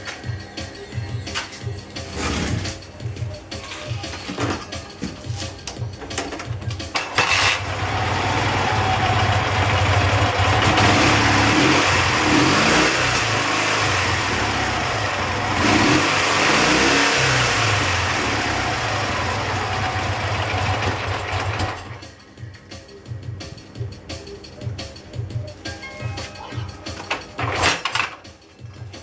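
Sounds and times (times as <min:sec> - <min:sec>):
motorcycle engine revving: 0:07.1 - 0:22.0.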